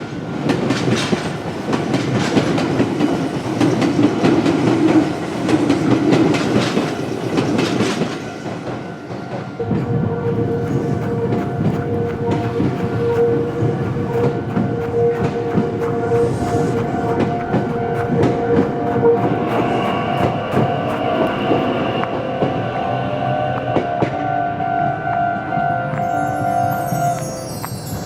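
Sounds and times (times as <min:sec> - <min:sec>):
train wheels clicking on rail joints: 0:00.0 - 0:22.8
steady tone: 0:09.6 - 0:28.0.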